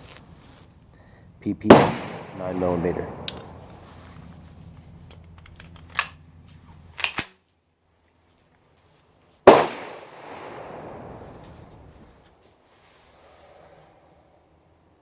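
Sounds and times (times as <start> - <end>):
pistol shot: 1.6 - 3.7, 9.5 - 11.2.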